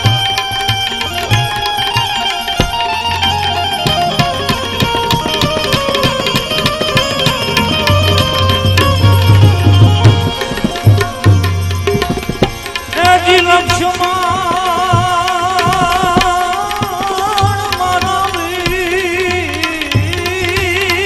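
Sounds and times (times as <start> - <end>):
melodic line with vibrato: 0.0 - 14.8
tabla rhythm: 0.0 - 21.0.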